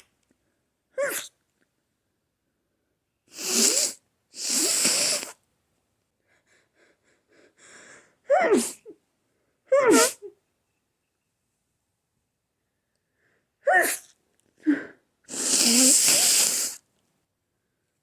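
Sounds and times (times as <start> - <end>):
person sneezing: 1.0 - 1.3, 3.3 - 5.4, 8.3 - 8.9, 9.8 - 10.3, 13.6 - 16.8
faint sniffs and breaths: 3.3 - 5.4, 14.6 - 16.8.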